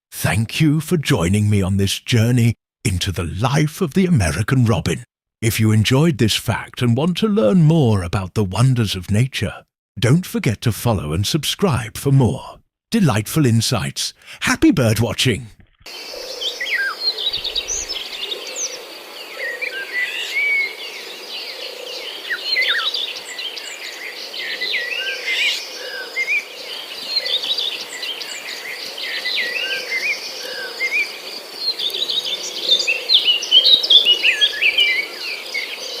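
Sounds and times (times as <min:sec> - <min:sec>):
birds chirping and singing: 0:15.9 - 0:36.0.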